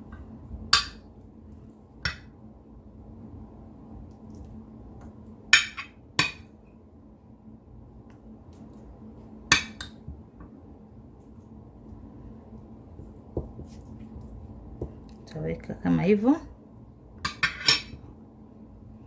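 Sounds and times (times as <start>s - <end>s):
faint steady hum: 0.0s - 19.0s
kitchenware clinking and knocking: 17.3s - 18.0s.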